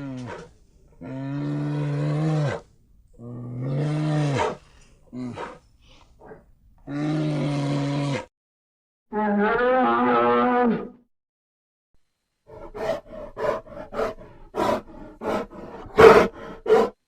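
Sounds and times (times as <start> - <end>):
bear roaring: 0.0 - 5.6, 12.5 - 17.0
bear grunting calls: 12.5 - 17.0.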